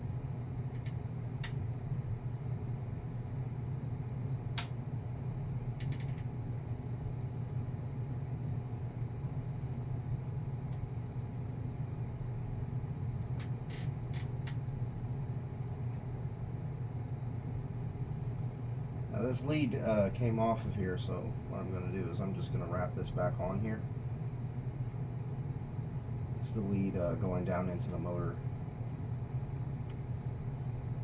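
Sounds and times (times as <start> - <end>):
computer fans whirring: 0.0 - 31.0.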